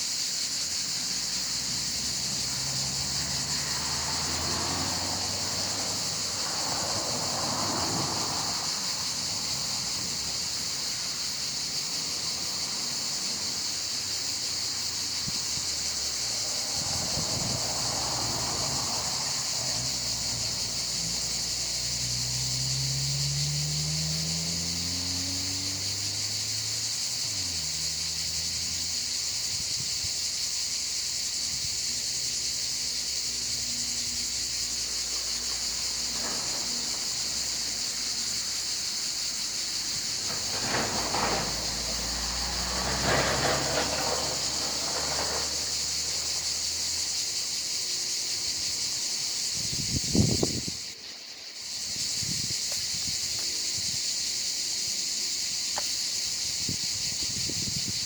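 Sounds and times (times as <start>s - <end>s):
cicadas shrilling: 0.0s - 58.0s.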